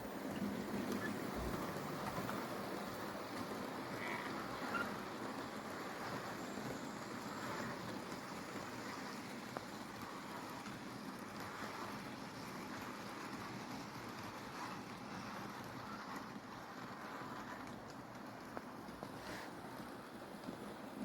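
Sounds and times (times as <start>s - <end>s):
model train rolling rumble: 0.0s - 21.0s.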